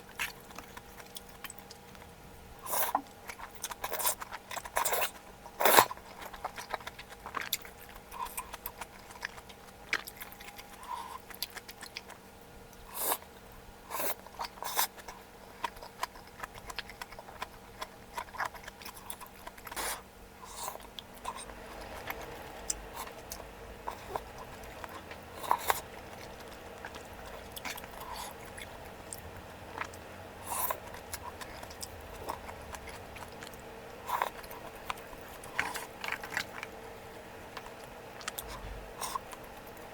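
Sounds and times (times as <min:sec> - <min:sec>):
person chewing: 0:00.1 - 0:12.2, 0:13.9 - 0:39.9.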